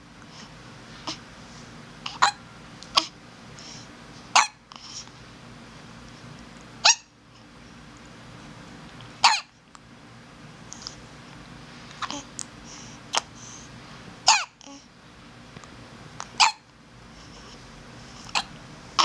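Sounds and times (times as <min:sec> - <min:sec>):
baby hiccupping: 0:02.0 - 0:03.2, 0:04.4 - 0:04.6, 0:06.8 - 0:07.1, 0:09.2 - 0:09.5, 0:14.2 - 0:14.9, 0:16.2 - 0:16.7, 0:18.3 - 0:19.0.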